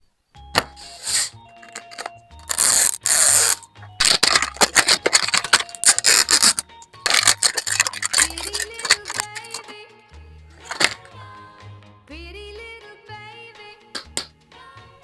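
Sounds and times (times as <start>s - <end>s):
background music: 0.2s - 15.0s
plastic packaging tearing: 0.9s - 9.7s, 10.6s - 11.1s
plastic wrapper crinkling: 0.9s - 9.7s, 10.6s - 11.1s.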